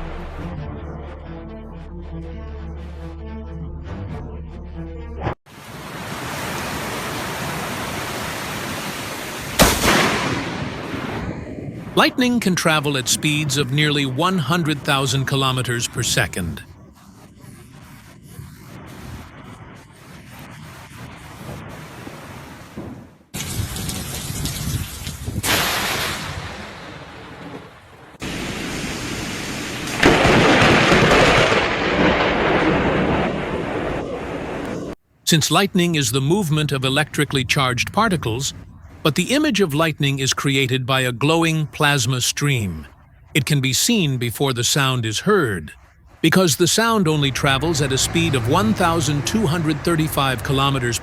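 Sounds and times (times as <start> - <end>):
heavy rain hissing: 5.5 - 10.6, 23.4 - 26.8, 46.2 - 51.0
rain hissing: 5.5 - 11.1, 11.8 - 32.7, 45.2 - 51.0
lightning crack: 6.3 - 16.3, 20.5 - 35.0
loud thunderclap: 9.5 - 12.0, 22.8 - 35.0.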